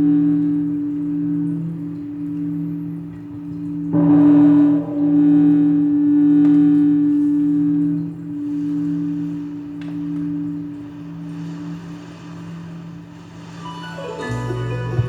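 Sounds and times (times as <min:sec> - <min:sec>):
deep wavering hum: 0:00.0 - 0:15.0
large temple bell struck: 0:03.9 - 0:08.0.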